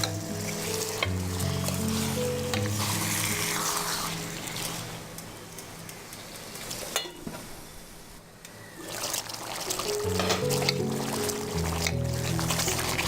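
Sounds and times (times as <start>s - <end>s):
water pouring into a pot: 0.0s - 5.0s, 8.8s - 13.0s
background music: 0.0s - 6.9s, 9.8s - 13.0s.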